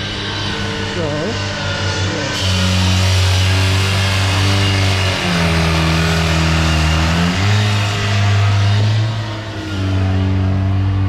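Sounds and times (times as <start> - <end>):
construction machine engine running: 0.0 - 11.0.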